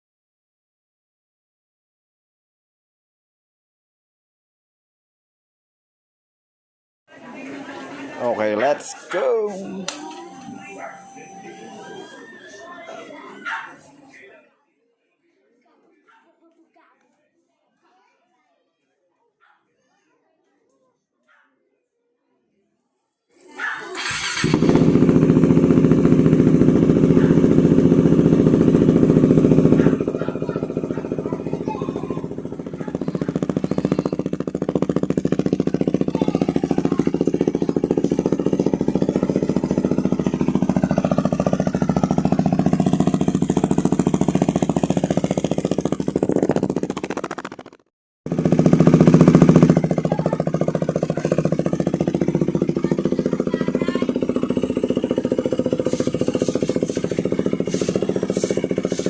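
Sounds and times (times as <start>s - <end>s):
motorcycle engine idling: 9.6s - 12.2s, 23.9s - 59.0s.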